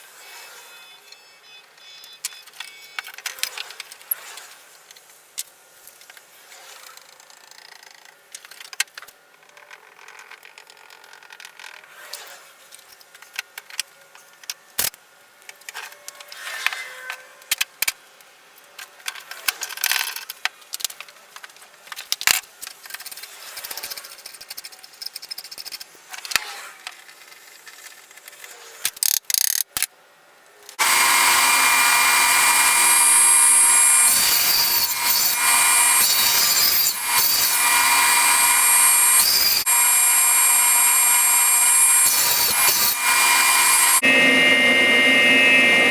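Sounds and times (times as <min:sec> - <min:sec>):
power tool running: 0:30.8 - 0:45.9.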